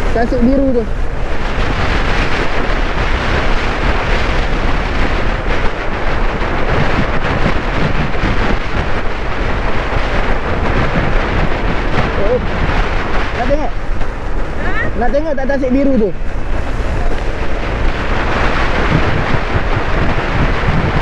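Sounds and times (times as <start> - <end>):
road noise: 0.0 - 21.0
wind rushing over microphone: 0.0 - 21.0
scooter engine running: 16.1 - 21.0.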